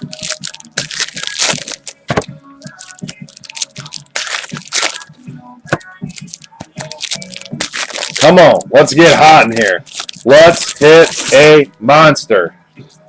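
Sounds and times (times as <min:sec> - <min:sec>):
card wrappers tearing and crinkling: 0:00.0 - 0:05.1, 0:06.1 - 0:11.7.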